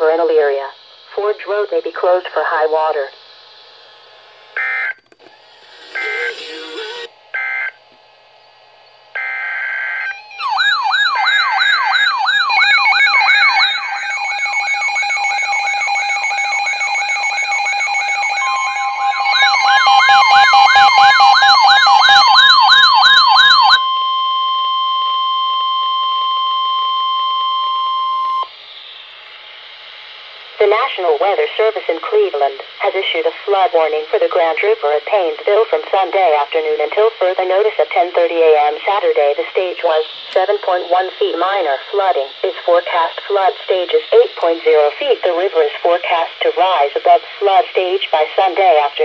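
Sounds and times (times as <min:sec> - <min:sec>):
steady warning alarm tone: 0:00.0 - 0:29.5
electronic siren wailing: 0:04.5 - 0:28.6
digital data tones: 0:04.6 - 0:07.8, 0:08.4 - 0:22.8.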